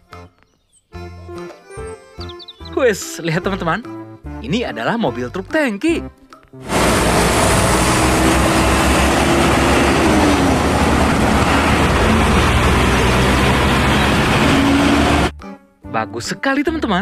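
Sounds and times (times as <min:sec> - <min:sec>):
road noise hiss: 0:06.6 - 0:15.3
truck engine rumble: 0:06.6 - 0:15.3.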